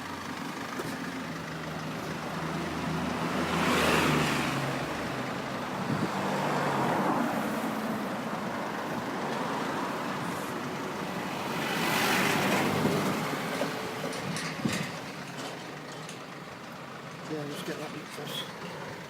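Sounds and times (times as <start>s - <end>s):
vehicle passing: 2.2s - 14.0s.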